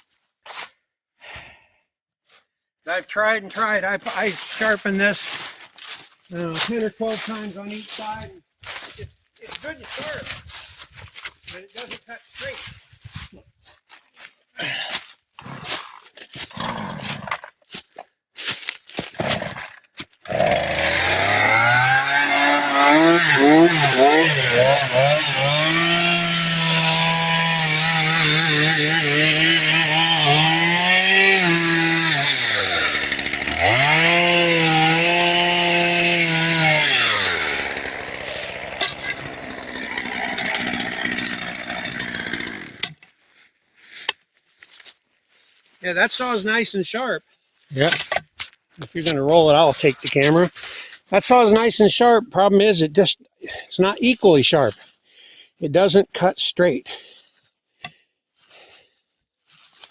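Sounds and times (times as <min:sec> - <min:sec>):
chainsaw cutting log: 0:15.4 - 0:17.6, 0:19.0 - 0:43.1.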